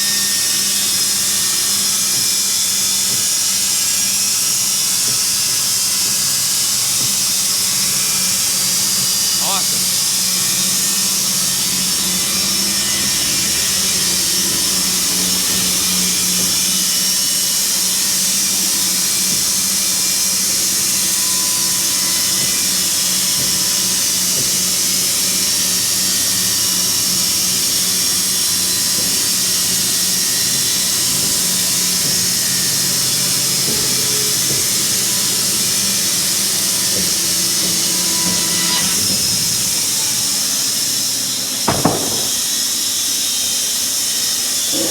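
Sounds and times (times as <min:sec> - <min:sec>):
band sawmill running: 0:00.0 - 0:42.8.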